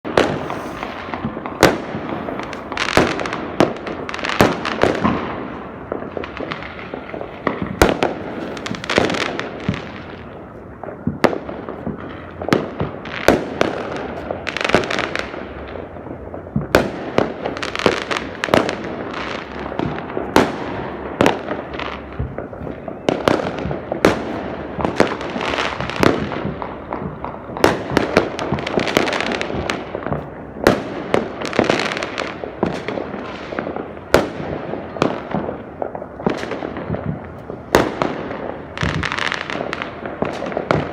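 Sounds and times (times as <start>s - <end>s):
crackling rumble of fireworks: 0.0s - 40.9s
fireworks bangs: 0.0s - 40.9s.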